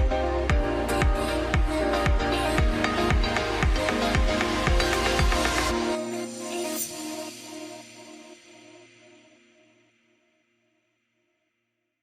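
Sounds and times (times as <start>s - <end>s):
kick drum beat: 0.0s - 5.4s
electronic music: 0.0s - 9.2s.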